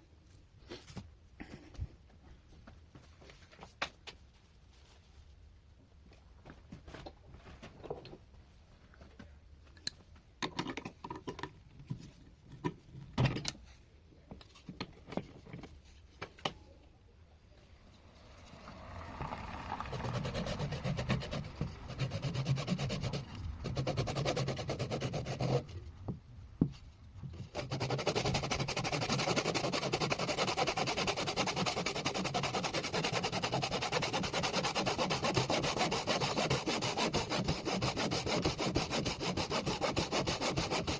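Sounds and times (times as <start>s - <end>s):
rough scraping on spinning wood: 17.5s - 26.0s, 27.2s - 40.9s
wood lathe humming: 17.6s - 25.7s.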